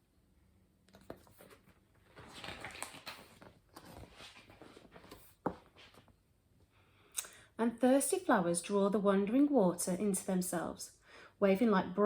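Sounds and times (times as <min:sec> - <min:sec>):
paper rustling page turn: 0:00.9 - 0:06.1.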